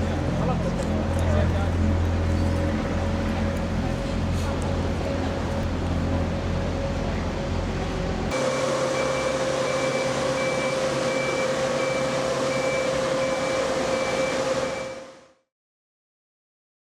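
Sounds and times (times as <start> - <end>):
machinery whining: 0.1 - 15.4
short high beeps: 8.4 - 15.1.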